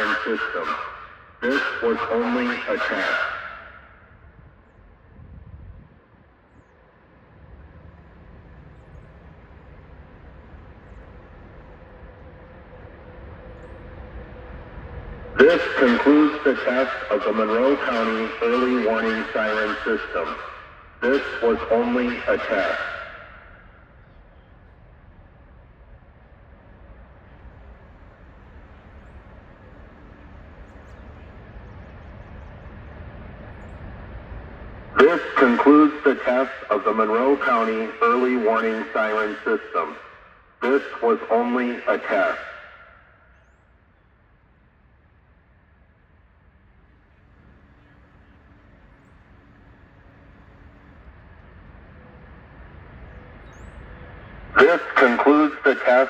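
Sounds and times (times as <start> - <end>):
faint steady hum: 0.0 - 56.0
low outdoor rumble: 0.0 - 56.0
faint high bird chirps: 53.0 - 54.1.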